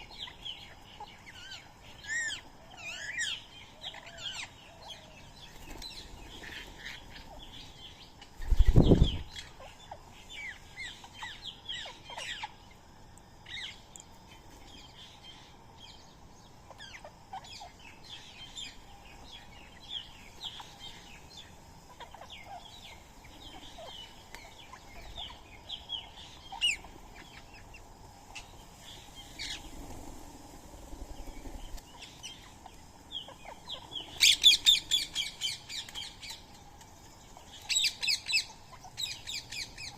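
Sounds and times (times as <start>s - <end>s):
birds chirping: 0.0s - 39.9s
wings flapping: 8.4s - 9.3s.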